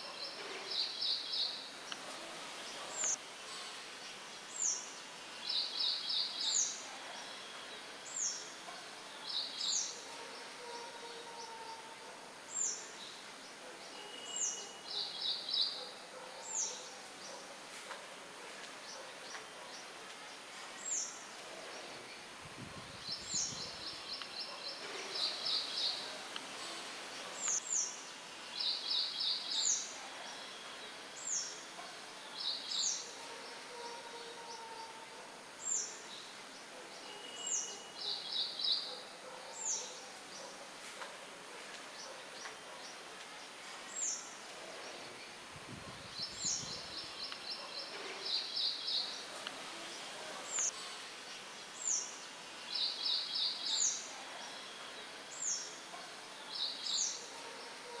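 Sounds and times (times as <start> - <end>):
light wind in leaves: 0.0 - 10.5, 12.3 - 33.7, 35.2 - 57.8
songbirds calling: 0.0 - 11.9, 18.4 - 34.8, 41.5 - 58.0.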